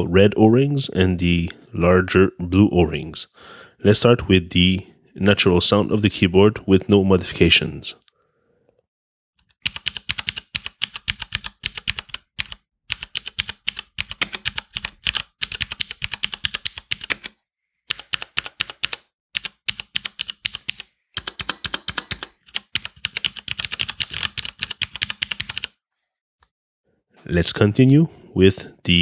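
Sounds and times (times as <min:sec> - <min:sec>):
mechanical keyboard keystroke clacks: 0:09.7 - 0:17.3, 0:17.9 - 0:25.7.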